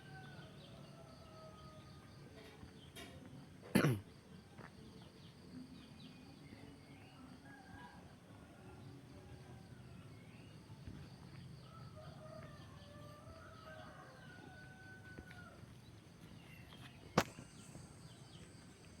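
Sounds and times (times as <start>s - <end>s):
rooster crowing: 11.6s - 15.6s.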